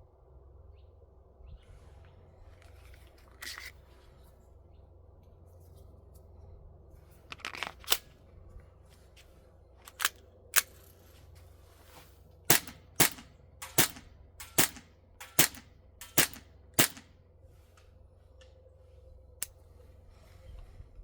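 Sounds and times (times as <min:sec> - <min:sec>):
airsoft pistol shots: 0:12.5 - 0:17.1.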